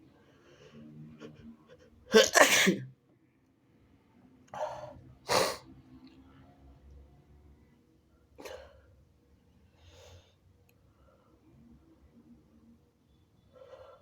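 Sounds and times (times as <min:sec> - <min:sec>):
person sneezing: 0:02.1 - 0:02.9, 0:05.3 - 0:05.6.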